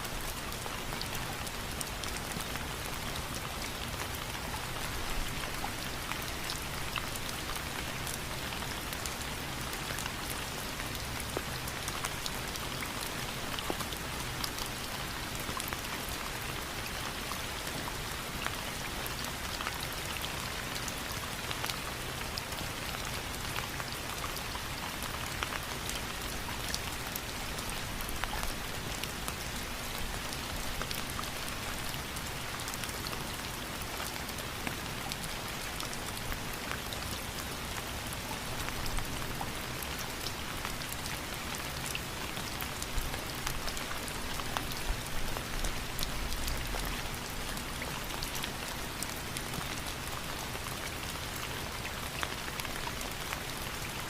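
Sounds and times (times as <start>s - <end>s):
steady rain patter: 0.0s - 54.0s.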